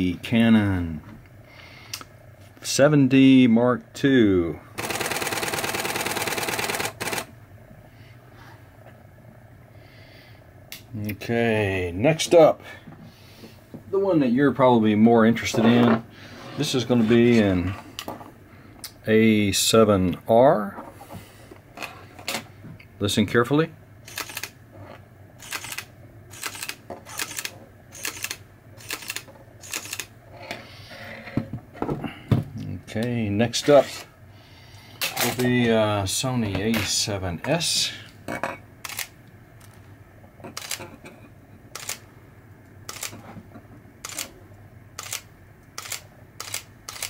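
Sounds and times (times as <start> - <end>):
camera shutter clacks: 24.1 - 24.5, 25.4 - 30.1, 40.6 - 40.8, 41.8 - 42.0, 42.9 - 43.1, 44.0 - 44.3, 45.0 - 47.0.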